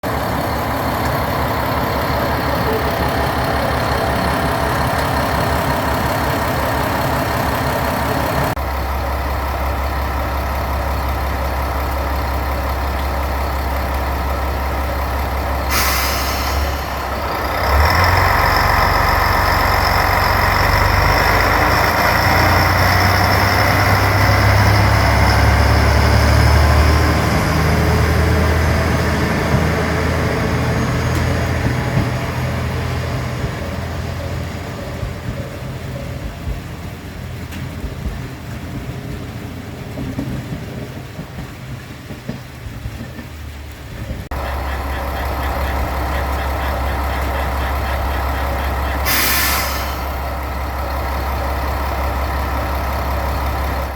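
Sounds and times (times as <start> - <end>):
diesel railcar engine: 0.0 - 53.9
air hiss: 15.7 - 17.1, 49.0 - 50.2.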